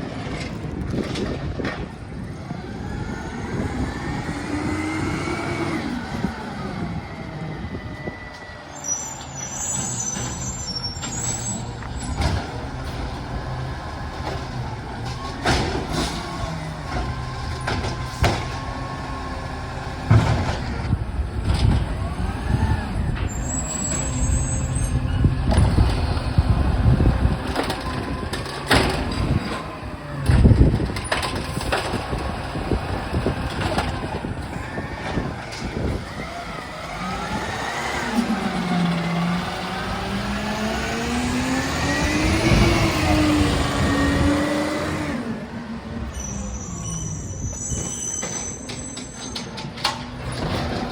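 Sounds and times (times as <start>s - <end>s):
truck diesel engine revving: 2.6s - 47.6s
knocks and bangs: 20.0s - 21.9s.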